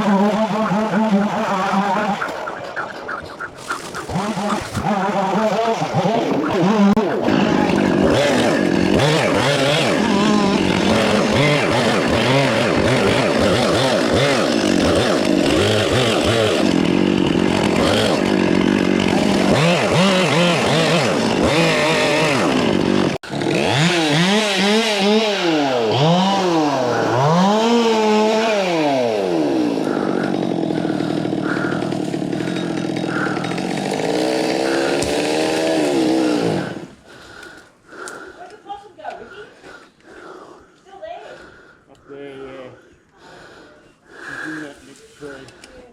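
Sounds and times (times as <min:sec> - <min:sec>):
chainsaw revving while cutting wood: 0:04.1 - 0:37.0.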